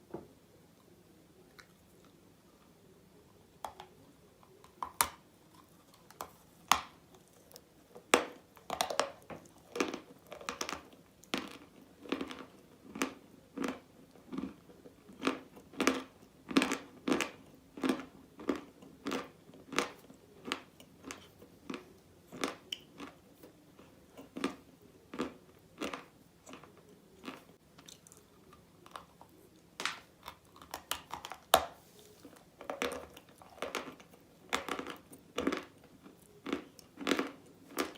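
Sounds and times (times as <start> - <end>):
person chewing: 8.2 - 37.9.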